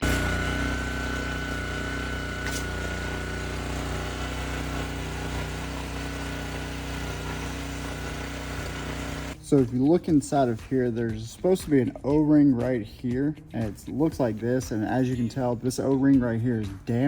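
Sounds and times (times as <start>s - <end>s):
pressure washer engine running: 0.0s - 9.4s.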